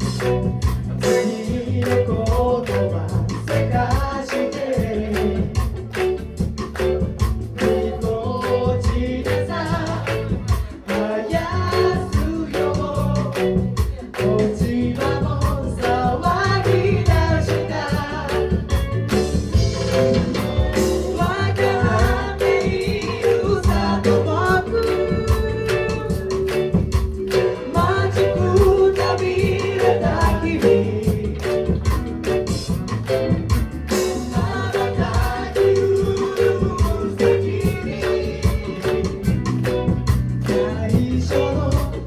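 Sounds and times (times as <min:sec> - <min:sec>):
group singing: 0:00.0 - 0:42.0
instrumental accompaniment with beat: 0:00.0 - 0:42.0.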